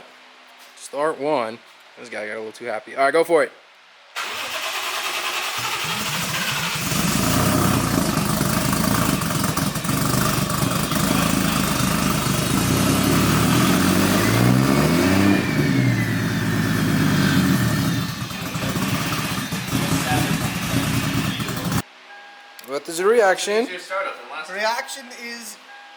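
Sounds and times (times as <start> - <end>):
car engine idling and revving: 5.5 - 21.8.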